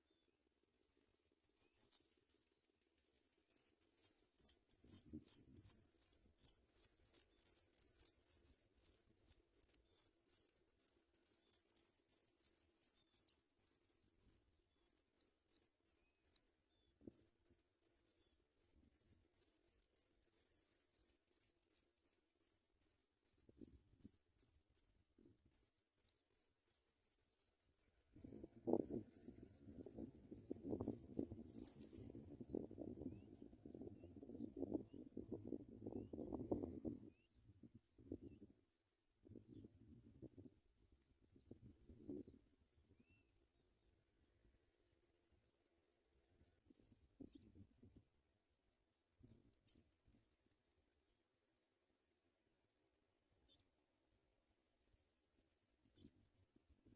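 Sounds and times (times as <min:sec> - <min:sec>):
nestlings chirping: 0:03.2 - 0:16.4, 0:17.1 - 0:24.9, 0:25.5 - 0:32.2.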